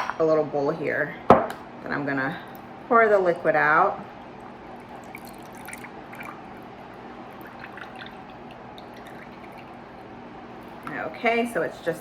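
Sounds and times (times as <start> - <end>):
liquid trickling into bowl: 2.5 - 11.1.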